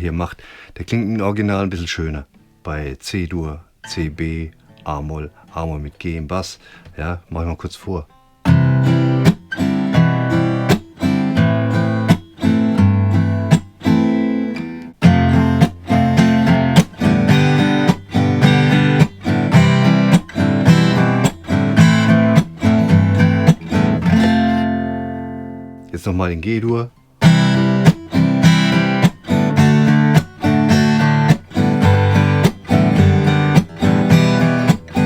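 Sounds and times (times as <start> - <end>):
acoustic guitar strumming: 8.1 - 25.9, 26.9 - 35.0.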